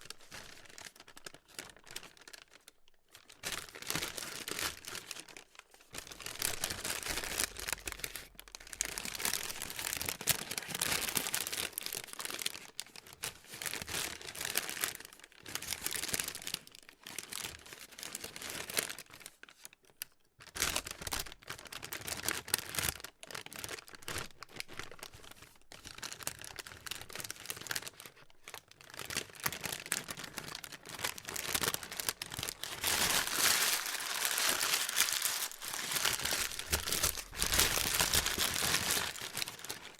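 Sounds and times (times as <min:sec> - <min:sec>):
plastic being crumpled: 0:00.0 - 0:39.9.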